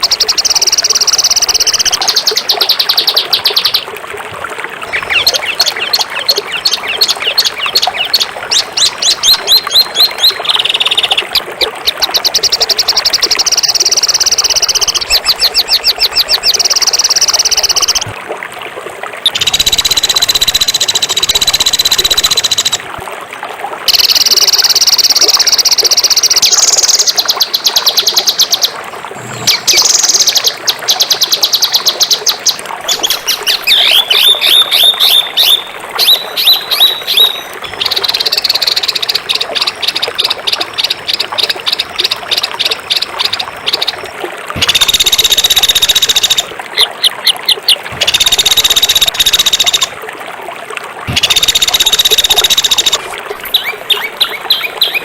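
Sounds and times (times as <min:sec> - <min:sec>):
songbird trilling: 0:04.9 - 0:18.1, 0:26.2 - 0:44.0, 0:51.1 - 0:55.0
bird chirps falling: 0:32.9 - 0:39.5.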